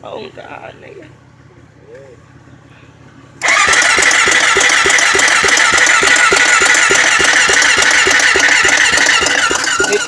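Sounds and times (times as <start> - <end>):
electric starter cranking engine: 3.4 - 10.0.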